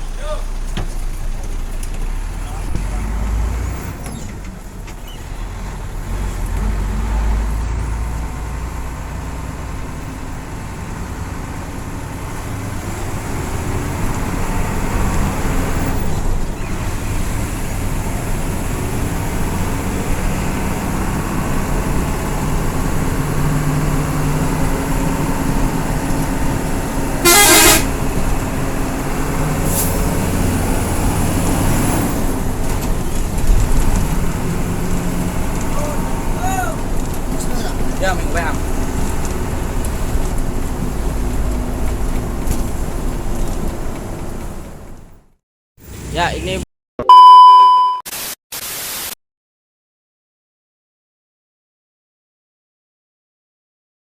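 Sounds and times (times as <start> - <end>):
bus engine and road noise: 0.0 - 48.0
loud bus horn blast: 27.2 - 28.2.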